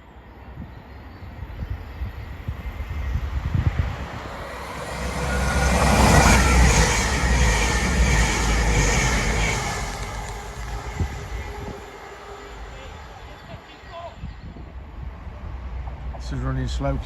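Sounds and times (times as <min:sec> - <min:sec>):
train passing: 0:00.0 - 0:17.0
train wheel noise: 0:01.7 - 0:17.0.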